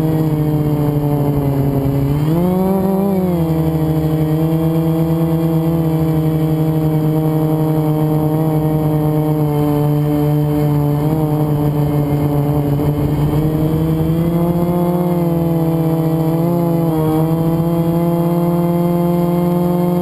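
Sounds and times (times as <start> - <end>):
quadcopter motors whining: 0.0 - 20.0.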